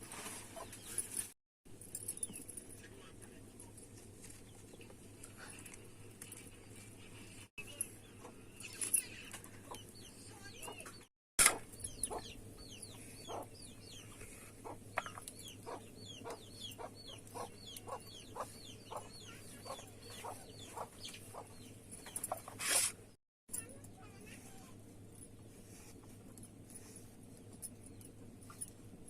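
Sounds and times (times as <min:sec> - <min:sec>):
chickens chirping: 0:07.6 - 0:22.6.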